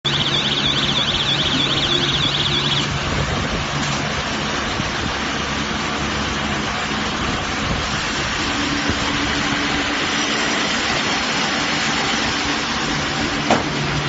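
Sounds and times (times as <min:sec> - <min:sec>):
high warbling tone: 0:00.0 - 0:03.8
baler machinery running: 0:00.0 - 0:14.0.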